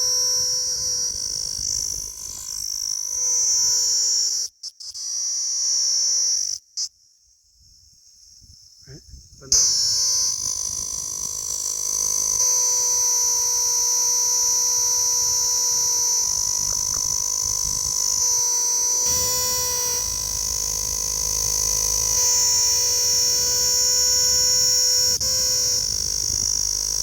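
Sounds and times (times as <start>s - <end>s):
insect trilling: 0.0s - 4.0s, 9.5s - 27.0s.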